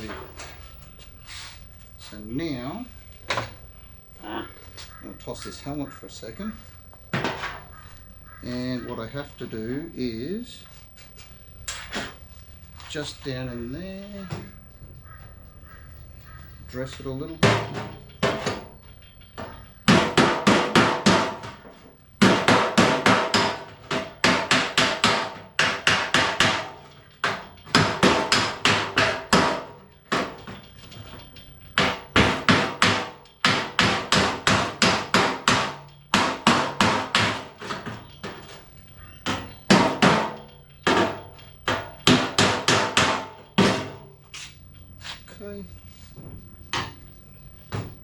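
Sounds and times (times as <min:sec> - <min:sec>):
hammer tapping on steel: 0:16.8 - 0:44.2.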